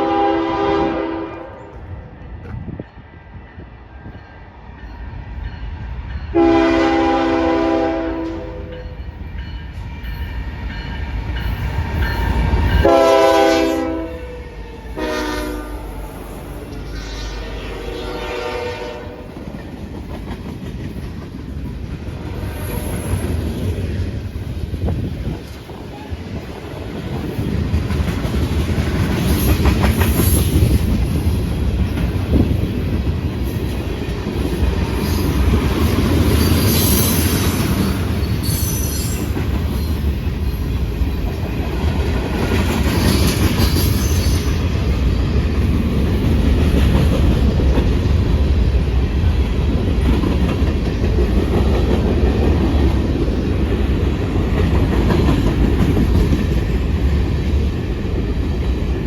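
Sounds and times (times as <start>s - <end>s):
freight train rumbling past: 0.0s - 59.0s
high-pitched wheel squeals: 38.2s - 39.3s.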